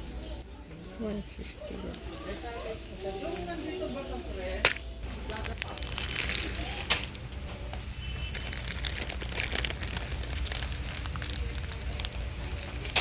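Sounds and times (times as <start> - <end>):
packaging crinkling and rustling: 5.1 - 7.2, 8.2 - 13.0.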